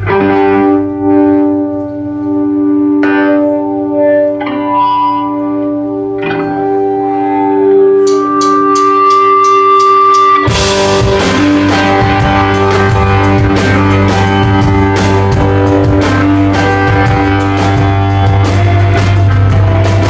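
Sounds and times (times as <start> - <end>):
electric guitar ringing notes: 0.0 - 20.0
rock band playing loudly: 0.0 - 20.0
drum kit taps: 8.0 - 20.0.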